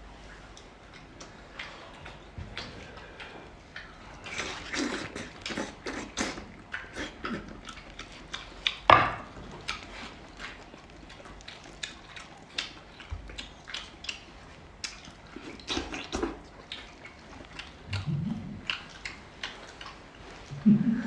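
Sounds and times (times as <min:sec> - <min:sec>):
person chewing wetly: 0:00.3 - 0:21.0
mouth smacks and clicks: 0:00.6 - 0:08.9, 0:09.6 - 0:20.7
low voice hum: 0:20.5 - 0:21.0.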